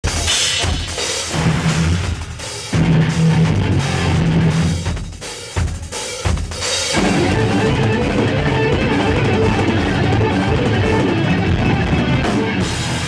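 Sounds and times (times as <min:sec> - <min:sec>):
drum kit and cymbals: 0:00.0 - 0:13.0
metal band playing: 0:00.0 - 0:13.0.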